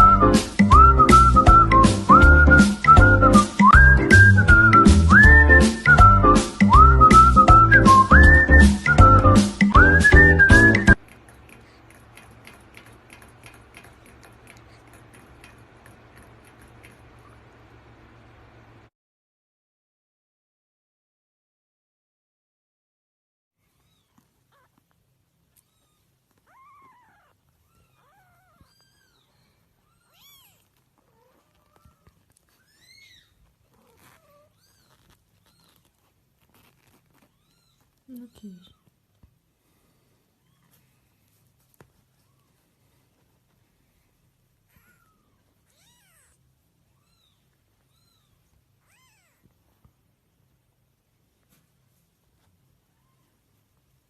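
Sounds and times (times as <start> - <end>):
small clicks: 11.0 - 17.5
kittens mewing: 23.7 - 25.0, 25.6 - 38.9, 44.6 - 49.5
cat meowing faintly: 25.6 - 35.9, 37.1 - 38.9, 44.7 - 46.4, 47.0 - 49.6, 52.9 - 53.5.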